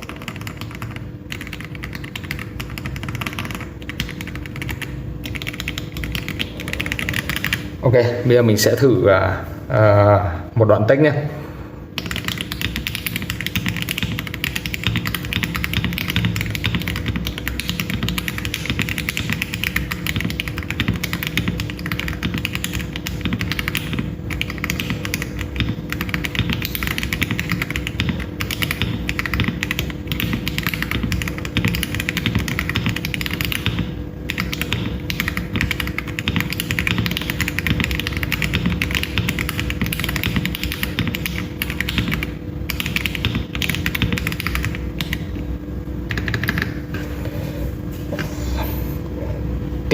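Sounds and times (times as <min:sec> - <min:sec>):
fast typing on mechanical keyboard: 0:00.0 - 0:07.8, 0:11.9 - 0:45.4, 0:46.1 - 0:46.8.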